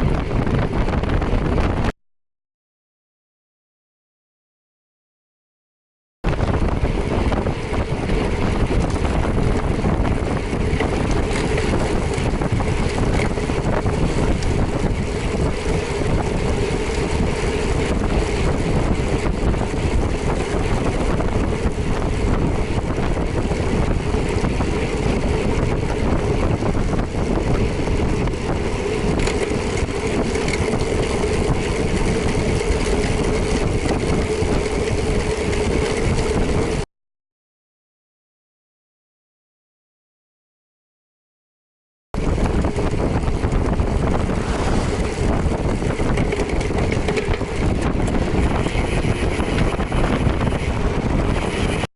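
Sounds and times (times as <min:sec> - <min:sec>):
motorcycle engine drone: 0:00.0 - 0:01.9, 0:06.3 - 0:36.9, 0:42.2 - 0:51.9
wind rush over microphone: 0:00.0 - 0:01.9, 0:06.2 - 0:36.9, 0:42.2 - 0:51.9.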